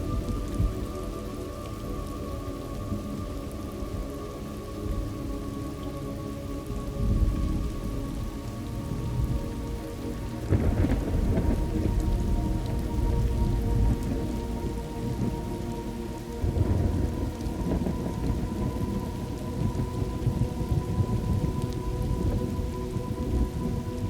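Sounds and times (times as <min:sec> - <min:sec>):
faint steady tones: 0:00.0 - 0:24.0
steady rain: 0:00.0 - 0:24.0
thunder rolling: 0:10.5 - 0:15.4, 0:16.4 - 0:24.0.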